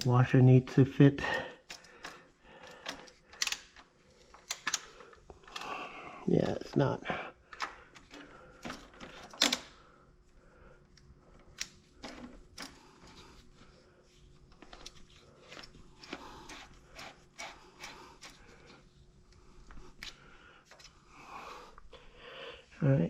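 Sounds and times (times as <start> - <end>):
hand tools clicking and clinking: 1.4 - 5.8, 7.5 - 9.7.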